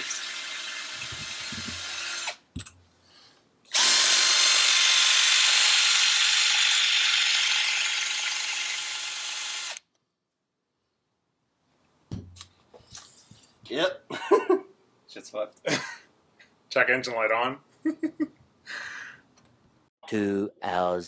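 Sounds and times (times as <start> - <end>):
power drill drilling metal: 0.0 - 2.4, 3.7 - 9.8.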